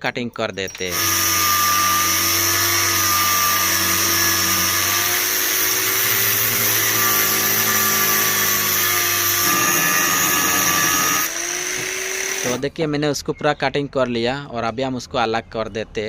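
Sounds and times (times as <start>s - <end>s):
power cutting tool whining: 0.8s - 12.6s.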